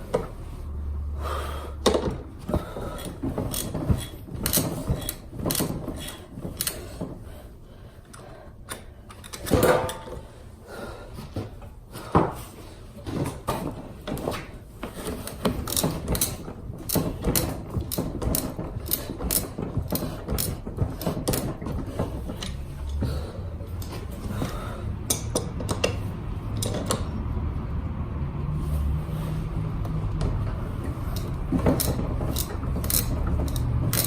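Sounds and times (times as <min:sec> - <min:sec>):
ratchet wrench clicking: 0:03.5 - 0:06.8, 0:31.1 - 0:34.0.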